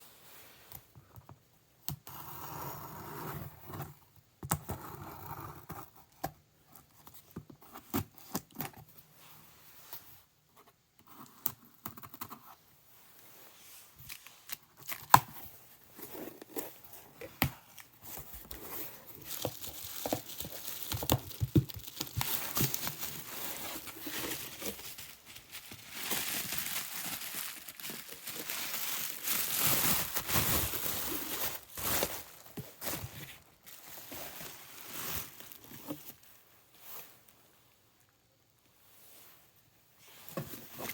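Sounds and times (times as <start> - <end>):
wrapping tearing and crinkling: 16.1 - 36.3.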